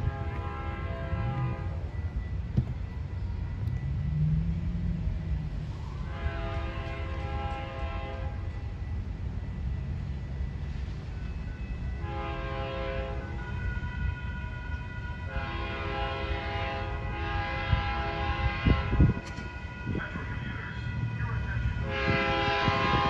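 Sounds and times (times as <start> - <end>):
train air horn blasts: 0.0 - 1.9, 6.0 - 8.5, 11.9 - 23.0
train rumble: 0.0 - 23.0
heavy low thuds: 2.5 - 3.1.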